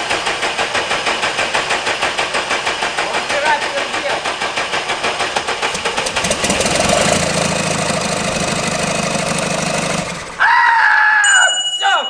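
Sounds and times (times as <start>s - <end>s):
diesel engine cranking on starter: 0.0s - 10.6s.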